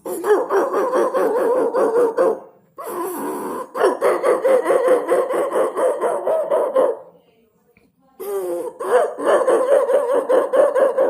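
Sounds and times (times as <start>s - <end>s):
man imitating dog yelps: 3.6s - 7.1s, 8.6s - 11.0s.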